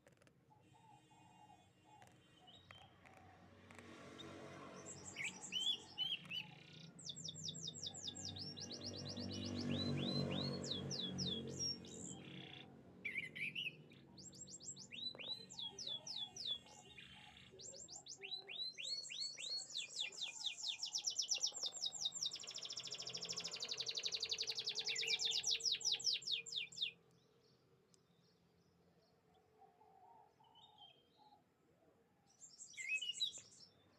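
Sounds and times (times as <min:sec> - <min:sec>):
canary singing: 0:04.9 - 0:27.0.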